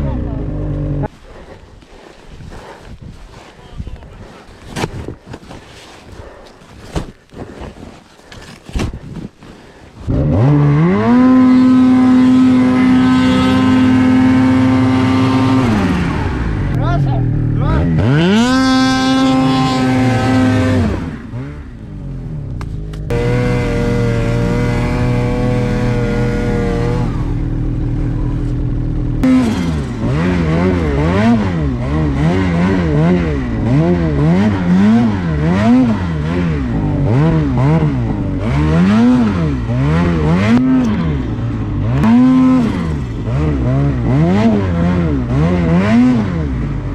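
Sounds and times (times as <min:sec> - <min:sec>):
snowmobile engine revving: 0:10.0 - 0:46.9.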